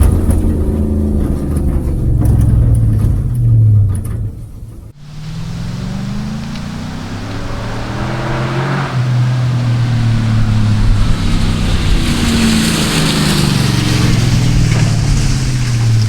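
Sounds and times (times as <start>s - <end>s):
engine exhaust droning: 0.0s - 16.0s
wind noise: 0.0s - 16.0s.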